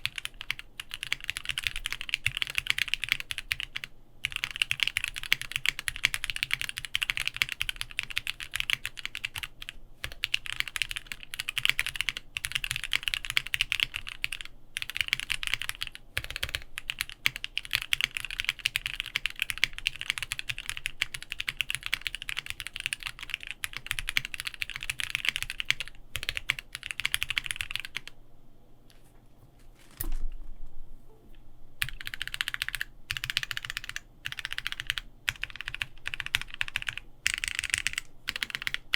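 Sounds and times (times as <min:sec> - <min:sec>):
typing on mechanical keyboard: 0:00.0 - 0:28.2, 0:31.8 - 0:38.9.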